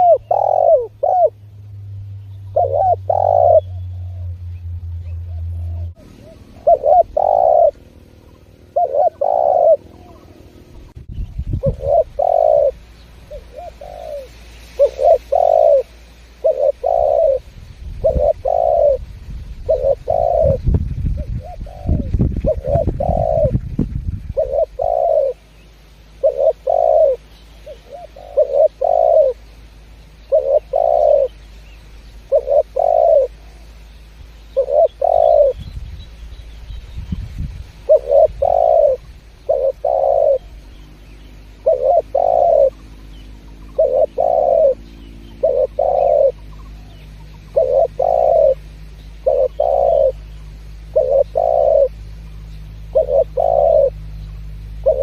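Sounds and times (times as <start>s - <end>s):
dove cooing: 0.0s - 1.5s, 2.4s - 25.5s, 26.2s - 29.6s, 30.2s - 31.4s, 32.2s - 33.8s, 34.5s - 35.7s, 37.8s - 55.0s
low rumble: 0.9s - 14.3s.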